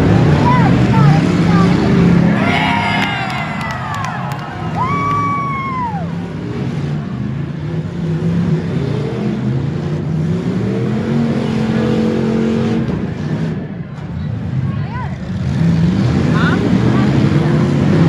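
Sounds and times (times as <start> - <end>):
car engines revving: 4.5 - 13.8.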